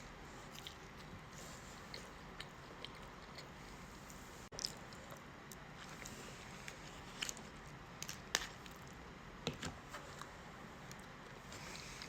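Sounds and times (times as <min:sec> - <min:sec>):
chewing with crisp crunches: 0:00.4 - 0:09.0.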